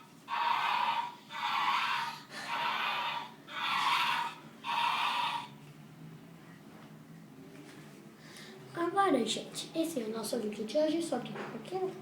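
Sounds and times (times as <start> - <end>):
loud breathy huffs: 1.9 - 4.4.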